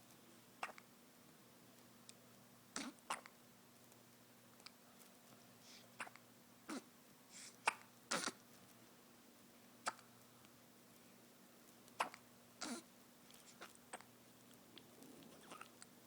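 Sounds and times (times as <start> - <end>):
baby hiccuping: 0.6 - 0.8, 2.8 - 3.3, 6.0 - 6.9, 7.6 - 8.4, 9.8 - 10.1, 12.0 - 12.8.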